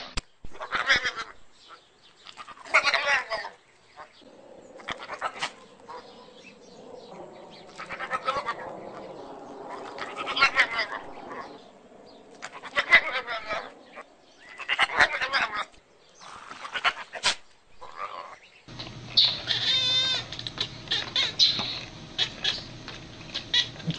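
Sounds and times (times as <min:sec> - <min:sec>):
steady low hum: 0:04.2 - 0:12.6, 0:18.7 - 0:23.9
animal crying loudly: 0:04.7 - 0:06.3, 0:07.0 - 0:08.8, 0:09.7 - 0:11.6, 0:12.4 - 0:13.8, 0:17.8 - 0:23.9.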